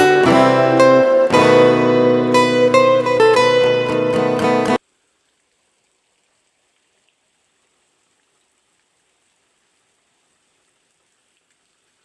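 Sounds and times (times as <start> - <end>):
faint rain hiss: 0.0 - 12.0
raindrops ticking: 5.1 - 12.0.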